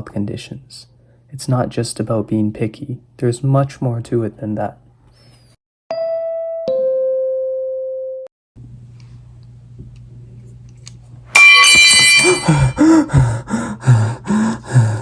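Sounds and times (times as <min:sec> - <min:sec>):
two-note doorbell chime: 0:05.9 - 0:08.3.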